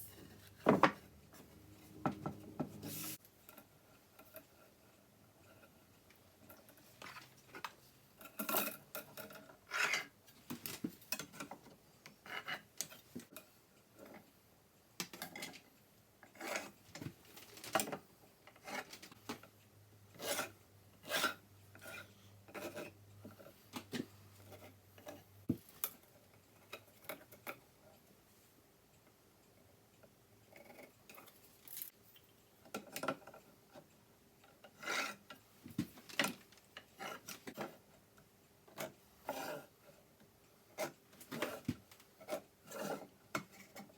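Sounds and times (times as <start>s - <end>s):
wood and tools knocking: 0.6s - 1.1s, 2.0s - 2.8s
scraping and rubbing on workbench: 1.9s - 3.2s.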